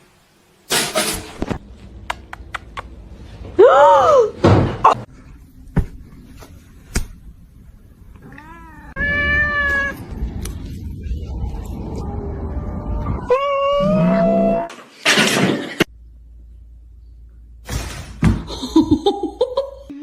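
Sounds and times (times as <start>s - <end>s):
cat meowing: 8.2s - 10.0s.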